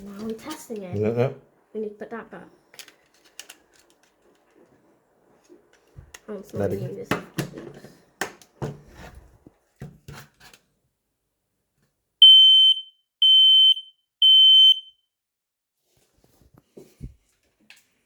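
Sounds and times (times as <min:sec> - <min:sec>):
smoke alarm beeps: 0:12.2 - 0:15.0.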